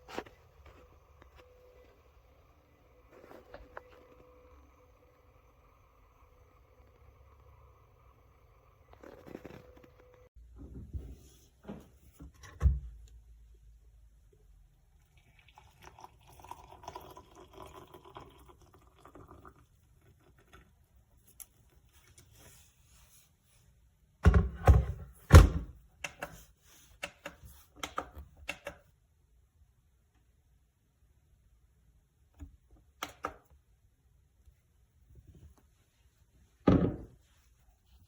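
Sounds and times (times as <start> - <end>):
water pouring: 15.0 - 20.8
kettle thunk: 36.7 - 37.2.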